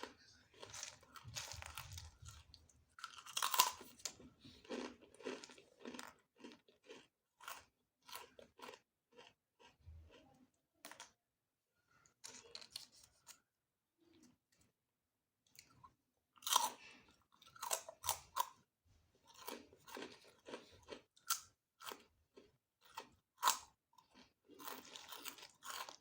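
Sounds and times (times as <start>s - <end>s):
crisp chewing: 0.0s - 9.8s, 19.3s - 26.0s
crunching bite: 3.0s - 9.7s, 22.9s - 26.0s.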